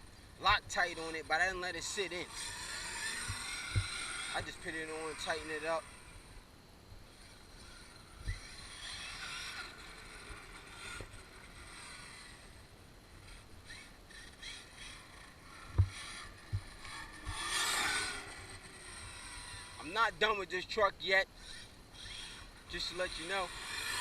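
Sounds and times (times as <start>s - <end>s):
electric motor whining: 0.9s - 6.4s, 7.1s - 20.0s, 21.4s - 24.0s
short thumps: 15.7s - 17.4s.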